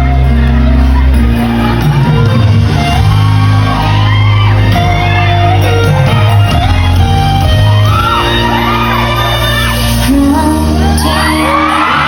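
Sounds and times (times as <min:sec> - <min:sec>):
fans shouting and screaming: 0:00.0 - 0:12.0
pop song over sound system: 0:00.0 - 0:12.0.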